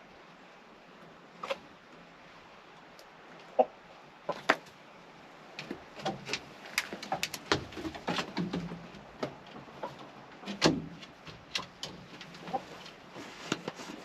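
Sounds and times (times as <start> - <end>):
chickens clucking: 1.4 - 1.6, 3.4 - 4.7, 5.6 - 14.0
knocks and creaks: 5.6 - 14.0.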